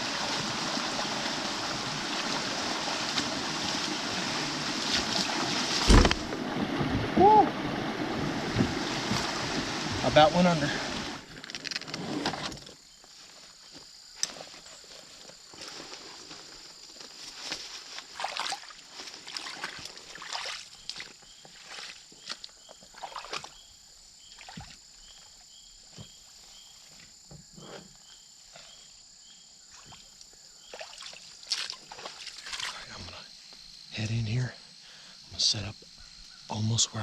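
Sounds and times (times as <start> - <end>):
boots sloshing through water: 0.0 - 10.2, 17.6 - 23.6, 30.7 - 32.8.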